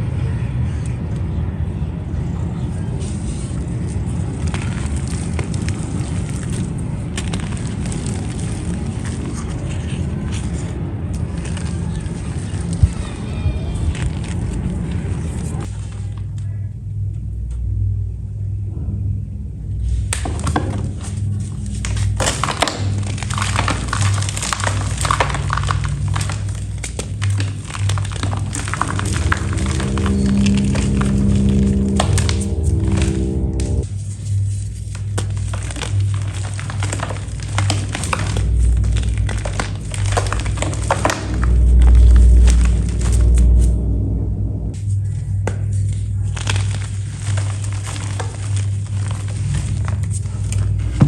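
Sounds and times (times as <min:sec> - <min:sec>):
low rumble: 0:00.0 - 0:51.0
brittle material snapping and crackling: 0:03.8 - 0:13.2, 0:20.1 - 0:43.9, 0:45.2 - 0:51.0.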